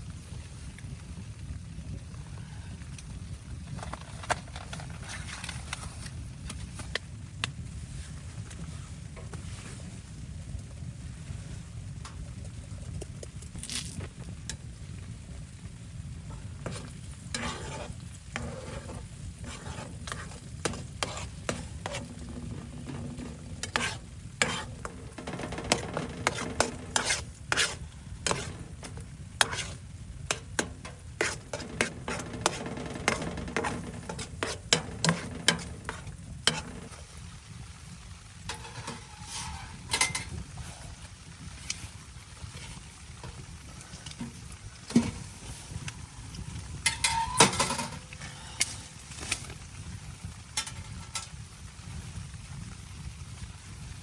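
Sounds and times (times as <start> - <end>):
utensil clinking in a pot: 16.3 - 37.2, 38.4 - 49.6, 50.5 - 51.4.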